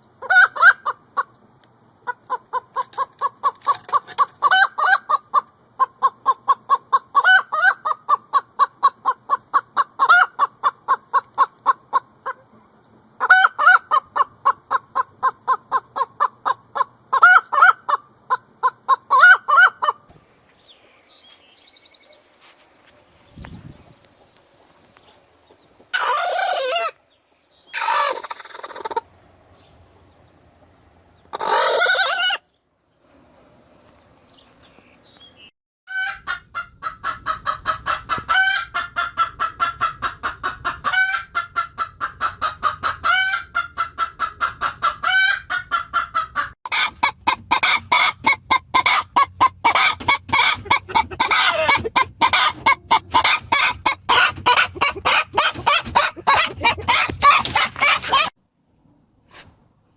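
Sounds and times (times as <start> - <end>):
chickens clucking: 0.0 - 33.2, 33.9 - 58.4
chickens calling: 0.0 - 58.4.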